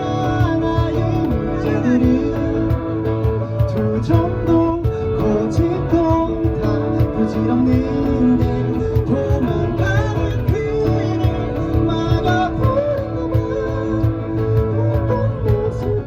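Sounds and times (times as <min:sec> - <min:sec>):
bass: 0:00.0 - 0:16.0
cajon beat: 0:00.0 - 0:16.0
guitars playing melody: 0:00.0 - 0:16.0.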